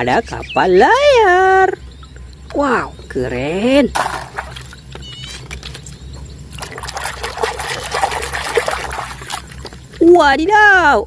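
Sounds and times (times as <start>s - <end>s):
water trickling and splashing: 4.0s - 10.4s.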